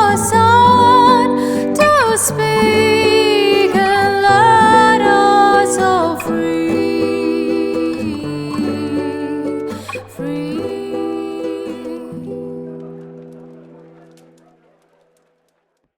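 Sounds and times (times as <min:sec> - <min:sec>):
person singing: 0:00.0 - 0:13.8
plucked guitar accompaniment: 0:00.0 - 0:15.1.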